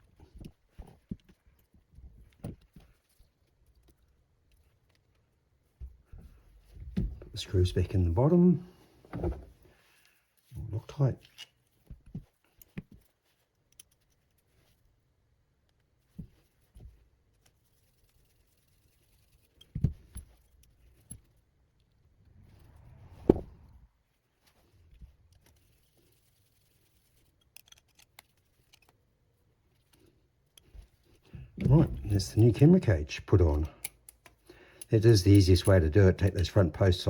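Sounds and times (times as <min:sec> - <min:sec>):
hand tools and parts clicking: 0:11.2 - 0:11.7, 0:12.5 - 0:14.5, 0:27.0 - 0:29.1, 0:33.4 - 0:36.5.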